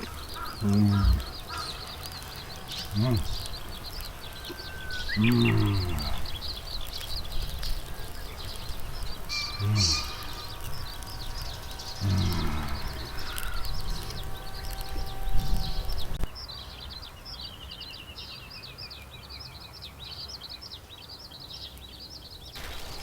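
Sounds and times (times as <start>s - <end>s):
man murmuring: 0.0s - 1.4s, 2.9s - 3.5s, 5.2s - 6.4s, 9.5s - 10.2s, 12.0s - 13.1s
small birds chirping: 0.0s - 23.0s.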